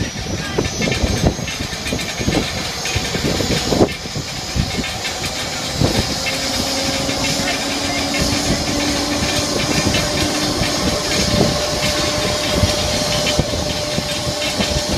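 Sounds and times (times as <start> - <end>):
aircraft cabin air rush: 0.0 - 14.9
steady hum: 0.0 - 14.9
low knocks and rattles: 0.6 - 14.9.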